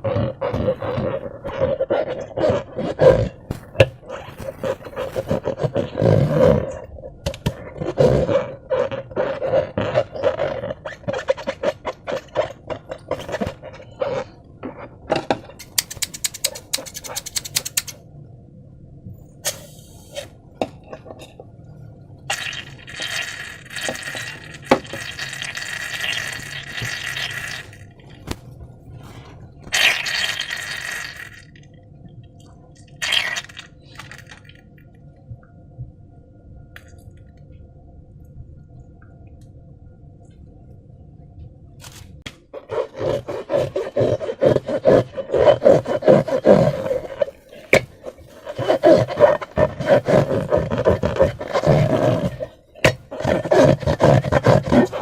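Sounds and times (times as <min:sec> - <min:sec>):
slime squelching: 0:00.0 - 0:15.0, 0:42.5 - 0:55.0.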